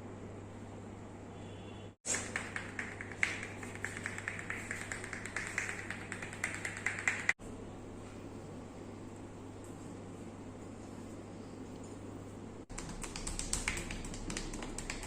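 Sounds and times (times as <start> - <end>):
rapid uneven tapping: 2.1 - 7.4, 12.7 - 15.0.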